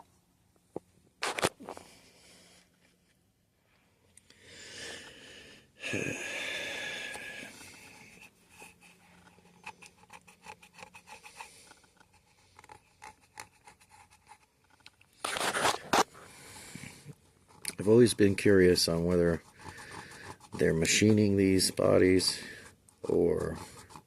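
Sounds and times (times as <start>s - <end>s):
guitar body rubbing and scraping: 7.5s - 24.0s.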